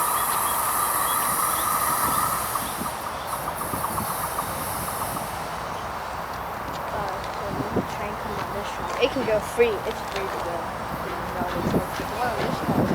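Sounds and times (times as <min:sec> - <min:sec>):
high squeal and hiss: 0:00.0 - 0:05.9
freight train rolling past: 0:00.0 - 0:12.9
ticking and rumble of cars: 0:01.5 - 0:12.9.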